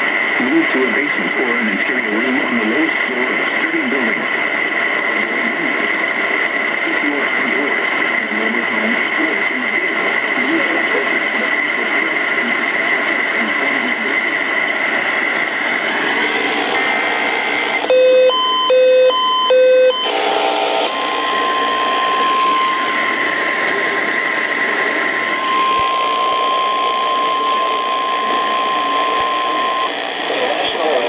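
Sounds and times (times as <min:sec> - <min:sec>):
radio hiss: 0:00.0 - 0:18.9, 0:19.6 - 0:31.0
steady alarm tone: 0:12.6 - 0:31.0
buzzy digital data bursts: 0:19.8 - 0:31.0.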